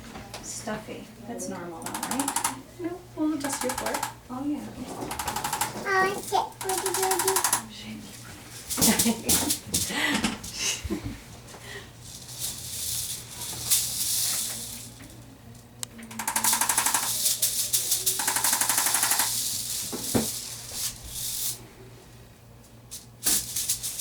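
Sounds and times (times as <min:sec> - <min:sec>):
fast mechanical tapping rattle: 0:01.8 - 0:02.6, 0:03.4 - 0:04.2, 0:05.1 - 0:07.6, 0:16.1 - 0:21.5.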